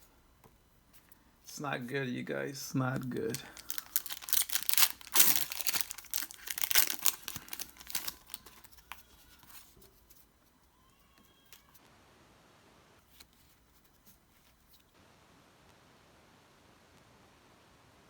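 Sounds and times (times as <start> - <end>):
faint rustling of cards: 0.0 - 11.8, 13.0 - 15.0
foil wrapper crinkling and tearing: 3.0 - 9.7.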